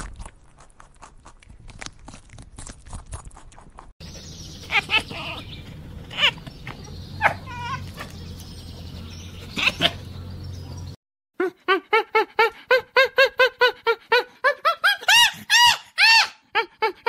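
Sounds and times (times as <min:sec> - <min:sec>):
animal calls: 0:04.0 - 0:10.9.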